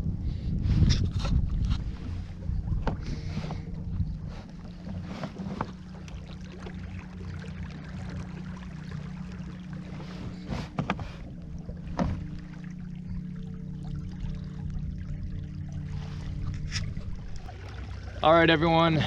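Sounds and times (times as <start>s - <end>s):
boat motor humming: 0.0s - 19.0s
knocks against hull: 2.7s - 6.8s, 9.9s - 13.2s.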